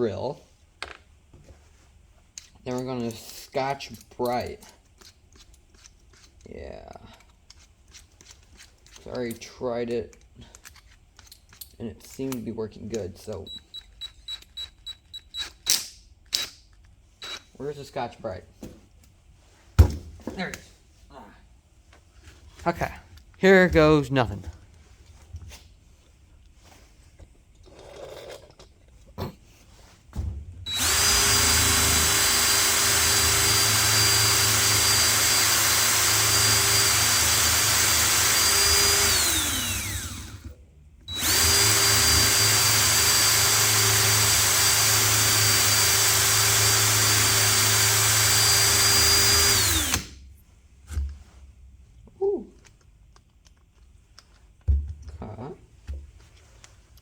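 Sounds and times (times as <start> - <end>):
electric drill whining: 30.7 - 40.5, 41.1 - 50.1.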